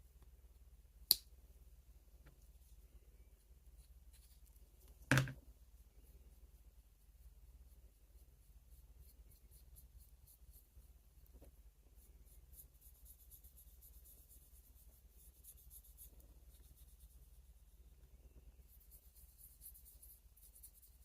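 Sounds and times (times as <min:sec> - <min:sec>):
rhythmic scratching on knife: 0:12.3 - 0:17.5, 0:18.7 - 0:21.0.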